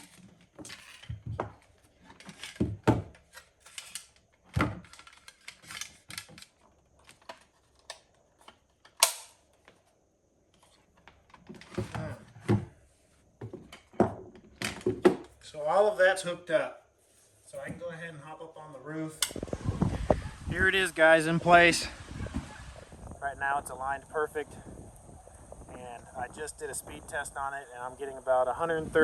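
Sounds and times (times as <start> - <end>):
sharp click: 9.0 - 9.4.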